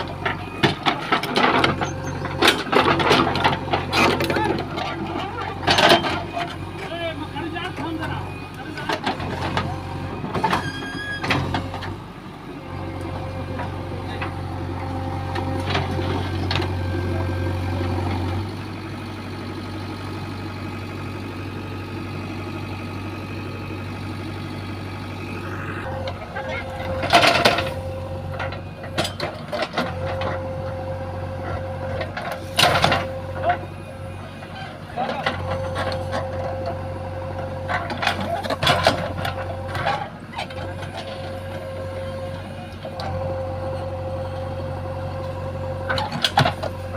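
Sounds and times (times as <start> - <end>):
machine knocking and scraping: 0.0 - 6.6, 15.3 - 17.3, 25.2 - 30.6
diesel engine running: 0.0 - 46.9.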